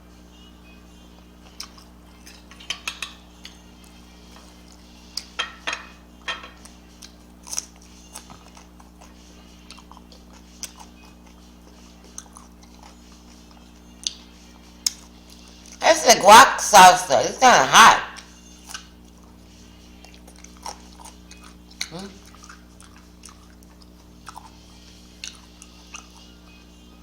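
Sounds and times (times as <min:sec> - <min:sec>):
steady low hum: 0:00.0 - 0:27.0
chewing: 0:01.4 - 0:05.4, 0:06.6 - 0:15.8, 0:18.2 - 0:26.7
cutlery clinking on plate: 0:02.5 - 0:03.2, 0:05.2 - 0:06.7.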